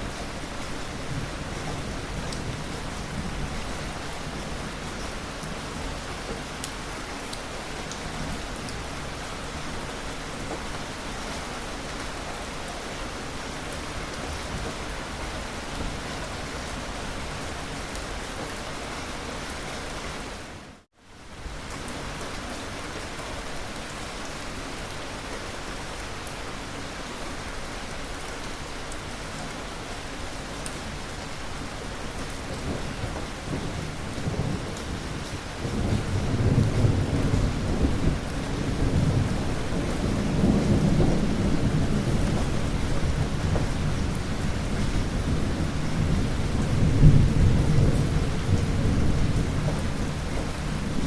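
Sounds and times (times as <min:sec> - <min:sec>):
heavy rainfall: 0:00.0 - 0:51.0.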